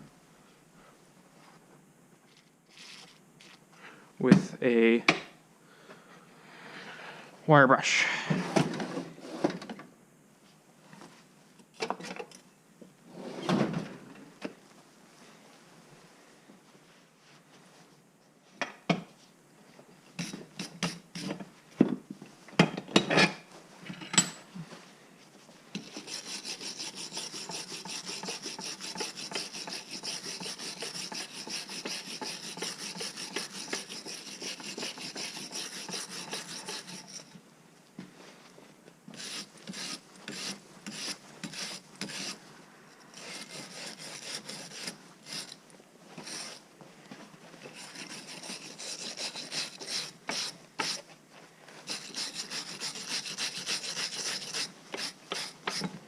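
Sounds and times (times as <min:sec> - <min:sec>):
wire brush scrubbing metal: 0:25.8 - 0:37.3, 0:39.2 - 0:42.4, 0:43.1 - 0:45.6, 0:47.7 - 0:51.0, 0:51.8 - 0:55.9.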